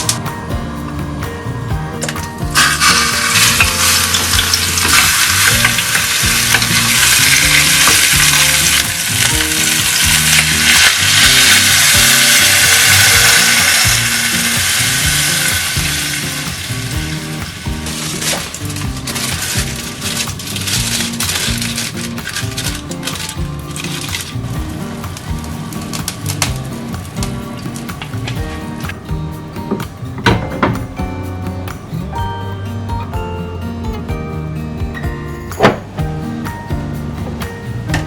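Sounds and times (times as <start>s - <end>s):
background music: 0.0s - 38.0s
food frying sizzle: 2.0s - 29.1s.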